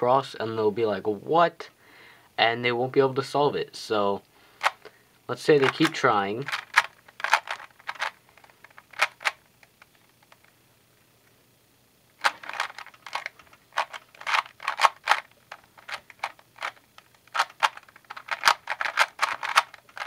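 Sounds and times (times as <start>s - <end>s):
puzzle cube layers clicking: 5.6s - 9.4s, 12.2s - 20.0s.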